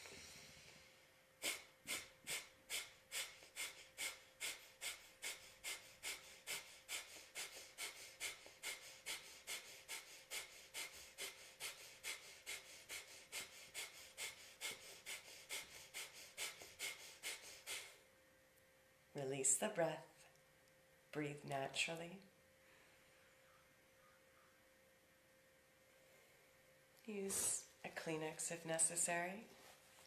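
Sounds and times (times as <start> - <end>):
rapid forceful nasal breaths: 0.0 - 18.1.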